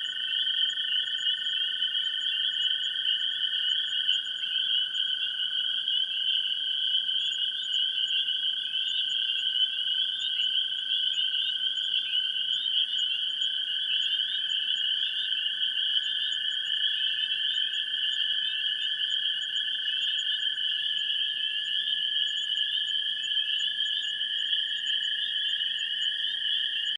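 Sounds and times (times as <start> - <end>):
frogs chorus chirping: 0.0 - 26.9.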